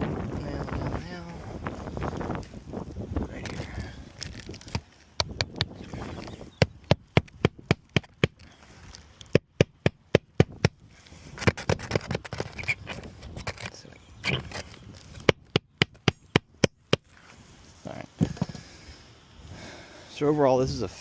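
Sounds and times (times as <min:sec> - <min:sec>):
shingle scraping and rustling: 0:01.6 - 0:09.4, 0:10.3 - 0:18.8
hammer tapping nails: 0:06.6 - 0:08.4, 0:09.3 - 0:10.8.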